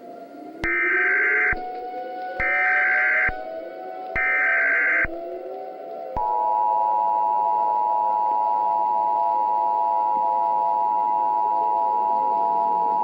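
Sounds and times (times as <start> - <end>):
two-tone attention signal: 0.6 - 1.8, 2.4 - 3.4, 4.2 - 5.2
harsh digital data bursts: 2.4 - 3.4, 4.2 - 5.1.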